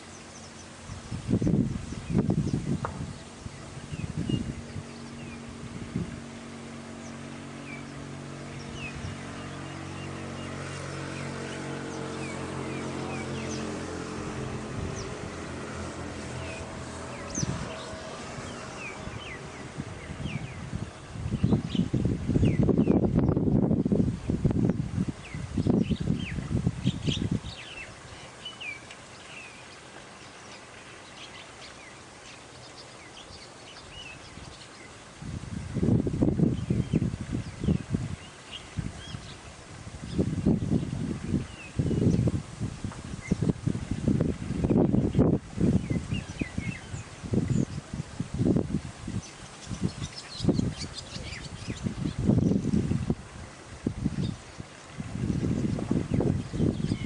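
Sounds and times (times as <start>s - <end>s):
small birds chirping: 0.0s - 24.4s, 25.2s - 42.4s, 43.1s - 48.0s, 49.1s - 53.0s, 54.0s - 57.0s
wind on microphone: 0.0s - 29.5s, 32.7s - 57.0s
vehicle engine hum: 0.0s - 33.6s.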